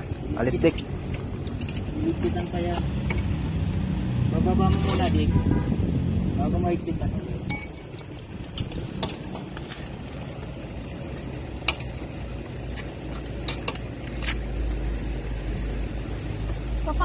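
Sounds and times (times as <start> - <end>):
metal tools clinking: 1.3 - 3.3, 4.6 - 5.2, 7.4 - 9.4.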